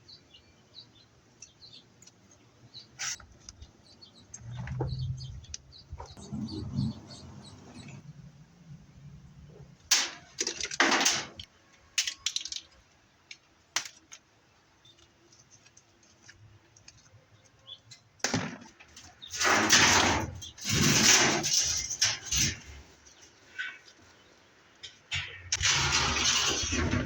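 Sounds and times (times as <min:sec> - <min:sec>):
scraping metal clatter: 0:09.5 - 0:12.7, 0:18.9 - 0:23.9, 0:24.8 - 0:27.0
metal parts clinking: 0:10.0 - 0:12.8.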